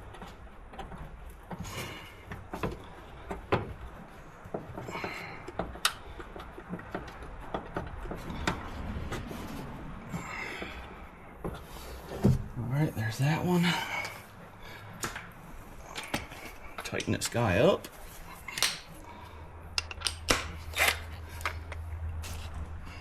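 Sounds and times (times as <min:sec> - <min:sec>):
hand tools clicking and knocking: 0:00.0 - 0:09.4, 0:14.9 - 0:22.2
scraping rustles: 0:00.0 - 0:19.4, 0:20.4 - 0:23.0.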